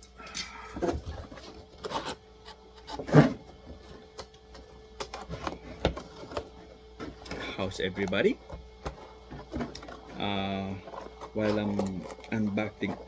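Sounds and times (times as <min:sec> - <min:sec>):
cardboard box rubbing and scraping: 0:02.8 - 0:03.9.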